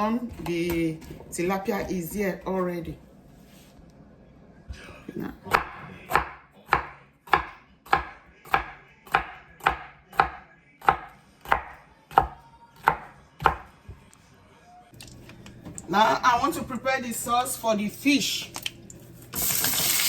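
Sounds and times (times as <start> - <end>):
knife chopping on cutting board: 5.5 - 14.0.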